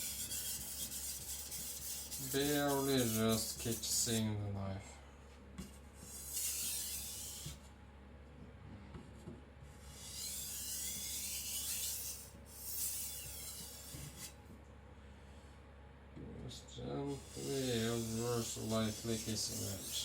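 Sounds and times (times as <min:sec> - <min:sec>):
knife scraping on whetstone: 0:00.0 - 0:03.8, 0:06.0 - 0:07.6, 0:09.9 - 0:14.4, 0:17.2 - 0:20.0.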